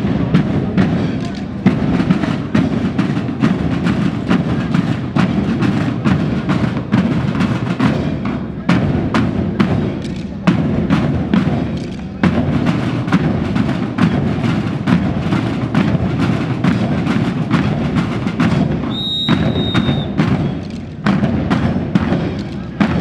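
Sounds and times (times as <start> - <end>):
marching drum beat: 0.0 - 23.0
parade band music: 0.0 - 23.0
high whistle: 18.9 - 20.6.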